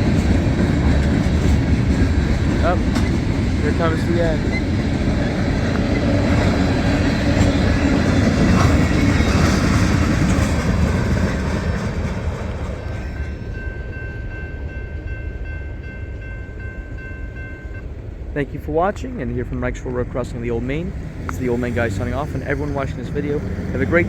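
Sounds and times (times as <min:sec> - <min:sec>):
freight train wheels clacking on rails: 0:00.0 - 0:14.3, 0:20.9 - 0:24.0.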